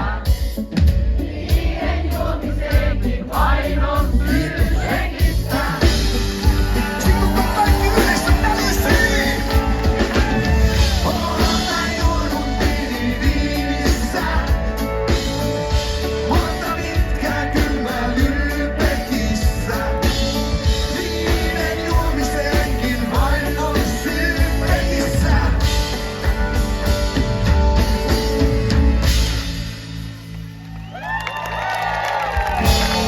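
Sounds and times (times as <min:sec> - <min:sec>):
rock and roll band with singer: 0:00.0 - 0:30.0, 0:31.1 - 0:33.0.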